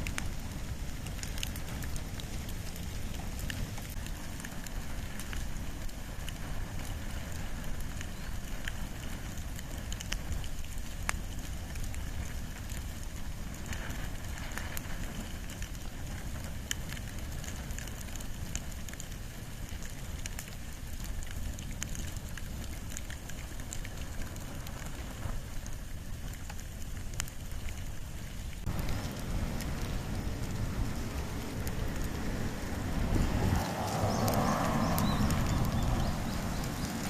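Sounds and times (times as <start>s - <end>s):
steady low rumble: 0.0s - 10.4s, 28.4s - 37.0s
fire crackling and popping: 0.0s - 37.0s.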